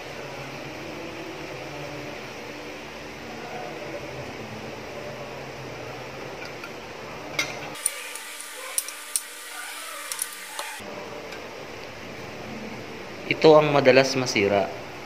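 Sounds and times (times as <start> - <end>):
steady background hum: 0.0 - 15.0
small parts clicking and tapping: 7.8 - 9.4, 10.0 - 10.8.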